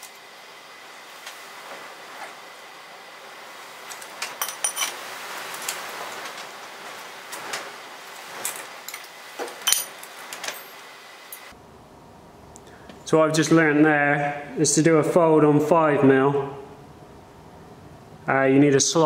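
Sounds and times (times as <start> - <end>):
steady workshop hiss: 0.0 - 19.0
metal bracket clinking: 4.2 - 5.0, 8.8 - 10.8.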